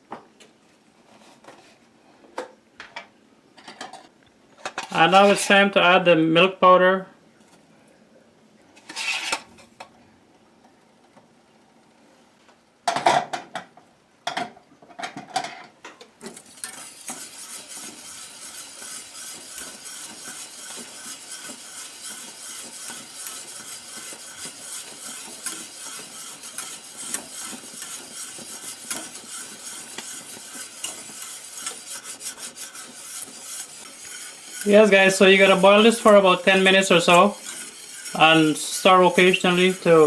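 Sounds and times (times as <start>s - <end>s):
whisk beating in pot: 16.3s - 40.0s.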